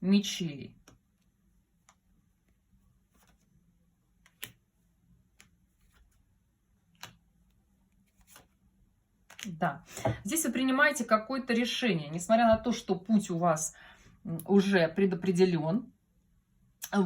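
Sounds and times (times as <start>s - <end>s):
faint clicks and taps: 0.8s - 2.6s, 5.2s - 6.0s.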